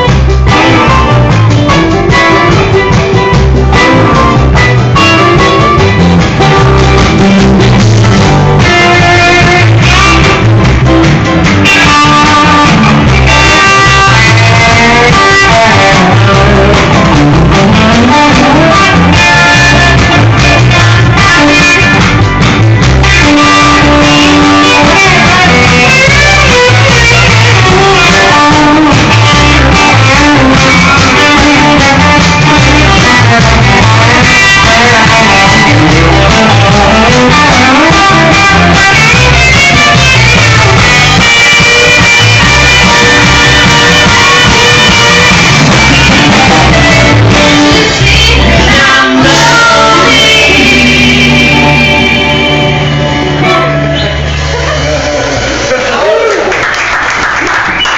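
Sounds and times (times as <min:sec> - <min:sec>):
guitar with bending notes: 0:00.0 - 0:56.8
live band playing loud: 0:00.0 - 0:57.9.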